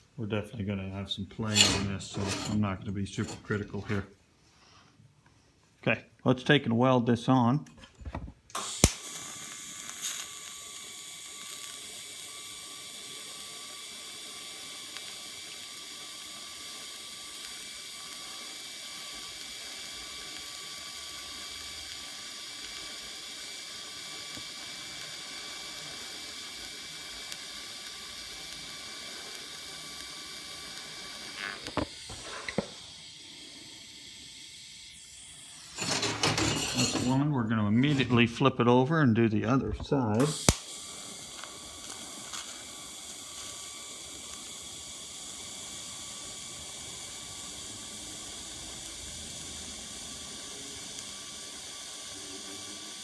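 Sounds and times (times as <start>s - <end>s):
welding arc hissing and buzzing: 8.5s - 37.2s, 40.2s - 53.0s
welder clicks: 8.6s - 9.2s, 40.2s - 40.8s.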